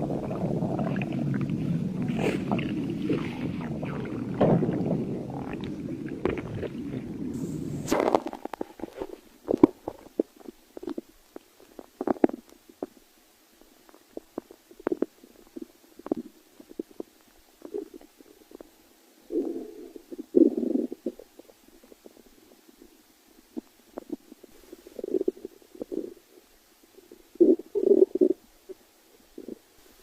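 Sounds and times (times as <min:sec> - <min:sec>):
stomach growling: 0:00.0 - 0:13.0, 0:13.8 - 0:29.7.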